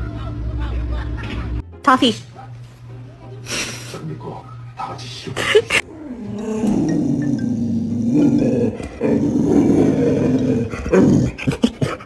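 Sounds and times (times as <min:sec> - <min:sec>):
dog growling: 0:05.7 - 0:12.0.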